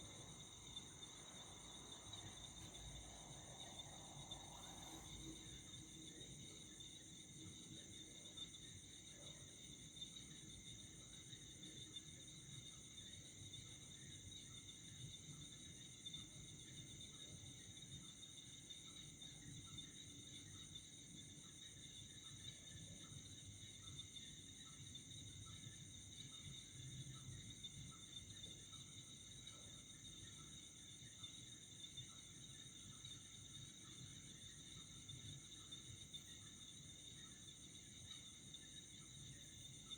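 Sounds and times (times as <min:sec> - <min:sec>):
night crickets chirping: 0:00.0 - 0:39.9.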